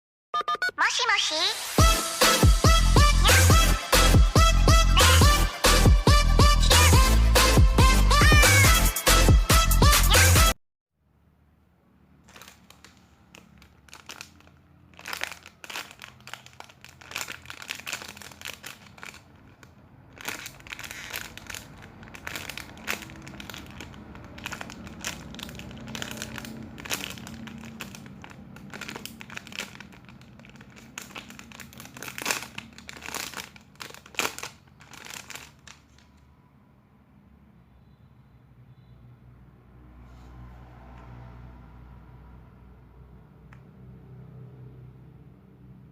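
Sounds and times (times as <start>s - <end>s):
foam toys crinkling: 12.2s - 36.2s.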